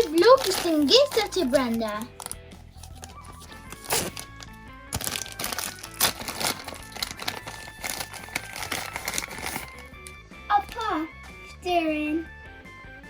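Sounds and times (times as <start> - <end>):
plastic packaging crinkling: 0.0 - 9.9
background music: 0.0 - 13.0.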